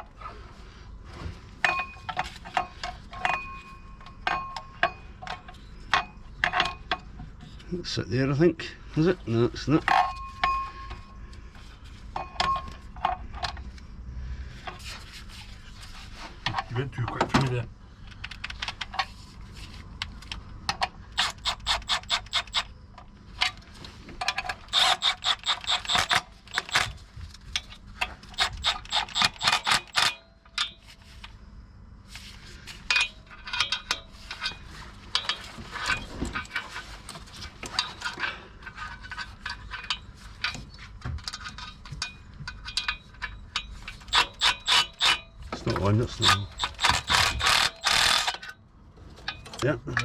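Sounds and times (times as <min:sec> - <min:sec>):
ratchet wrench clicking: 0:21.2 - 0:22.7, 0:24.7 - 0:27.0, 0:27.6 - 0:30.8, 0:43.9 - 0:45.3, 0:46.2 - 0:48.5.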